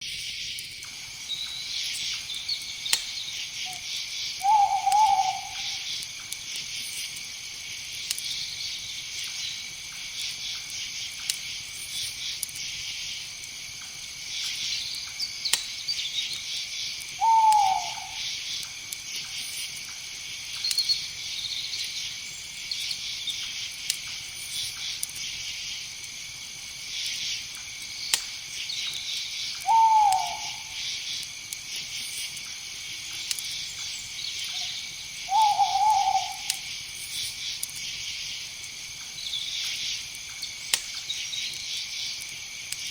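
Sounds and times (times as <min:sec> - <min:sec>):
night insects chorus: 0:00.0 - 0:42.9
owl hooting: 0:04.4 - 0:05.9, 0:17.2 - 0:18.3, 0:29.6 - 0:30.8, 0:34.5 - 0:36.7.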